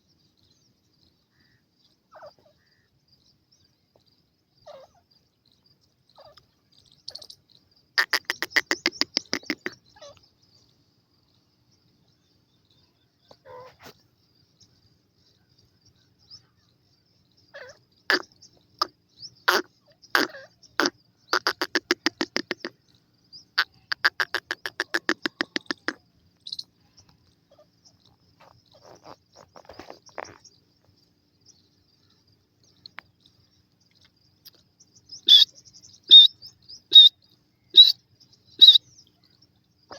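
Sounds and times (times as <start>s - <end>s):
francolin calling: 4.6s - 5.1s, 6.1s - 10.6s, 17.4s - 39.9s.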